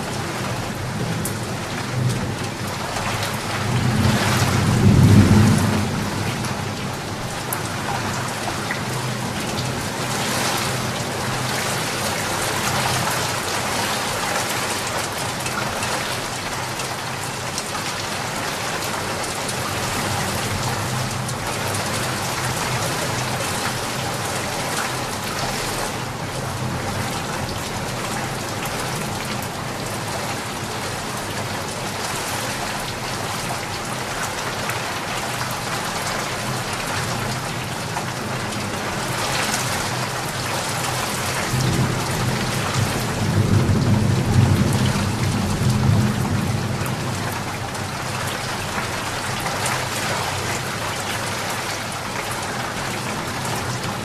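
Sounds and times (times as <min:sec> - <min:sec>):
steady rain: 0:00.0 - 0:54.0
thunder rumble: 0:03.5 - 0:07.5.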